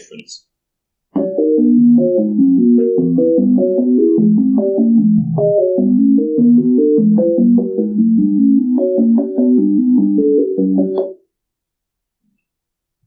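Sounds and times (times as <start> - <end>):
synthesized keyboard chords: 1.2 - 11.2.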